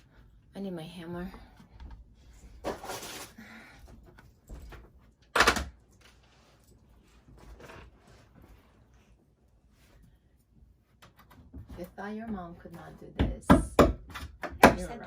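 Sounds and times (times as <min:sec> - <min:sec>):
hammer knocking on wooden door: 0:13.2 - 0:15.0.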